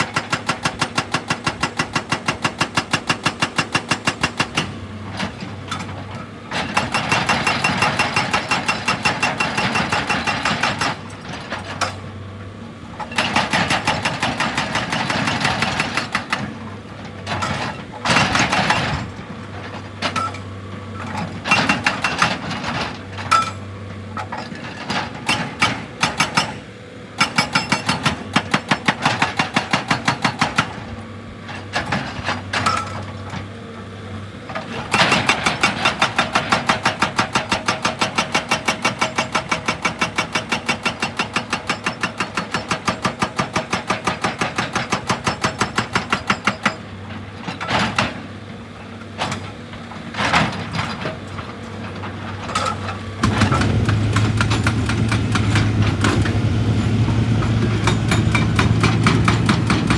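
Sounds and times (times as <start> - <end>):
hydraulic hammer striking rock: 0.0 - 4.8, 6.6 - 12.0, 13.1 - 16.5, 25.2 - 30.8, 34.8 - 46.8, 52.5 - 59.9
steady engine hum: 46.8 - 59.9.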